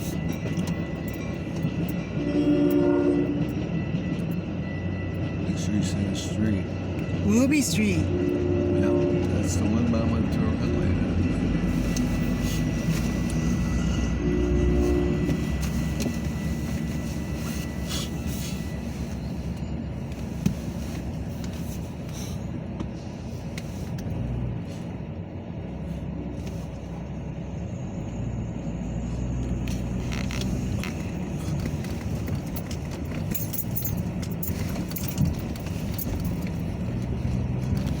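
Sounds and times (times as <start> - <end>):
train wheels rumbling on rail: 0.0 - 38.0
metallic rattling and jangling: 30.1 - 38.0.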